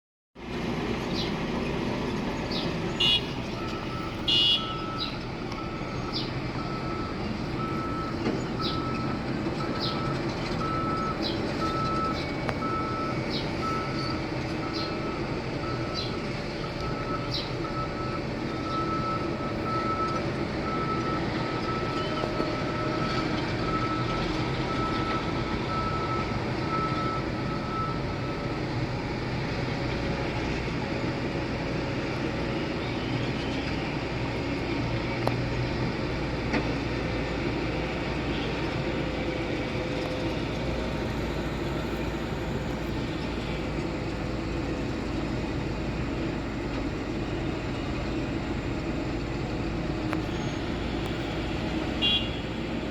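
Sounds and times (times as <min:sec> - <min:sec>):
diesel machinery running: 0:00.4 - 0:52.9.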